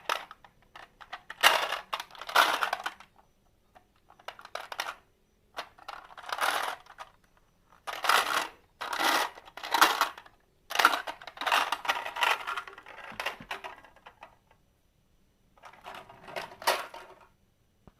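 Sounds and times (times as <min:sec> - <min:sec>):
marbles rattling down wooden track: 0:00.0 - 0:03.1, 0:05.8 - 0:07.1, 0:07.8 - 0:14.0.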